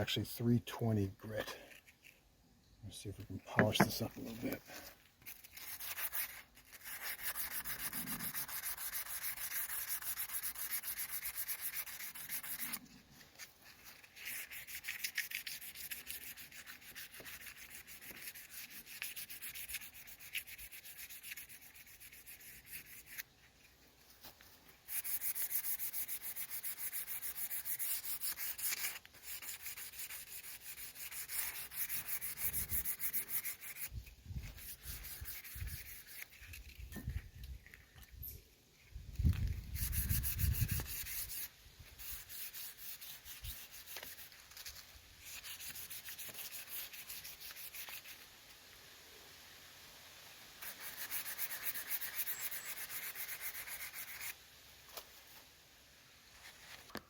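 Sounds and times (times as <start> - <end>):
sandpaper rasping on hull: 3.6 - 23.3, 24.8 - 37.8, 39.4 - 48.2, 50.6 - 54.4.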